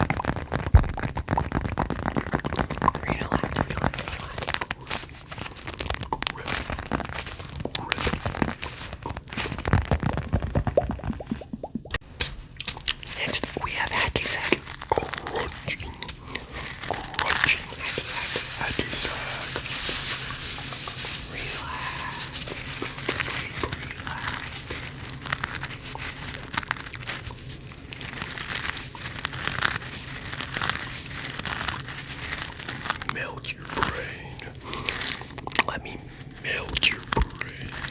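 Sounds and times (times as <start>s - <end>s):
hacky sack filling crunching: 0.0s - 37.9s.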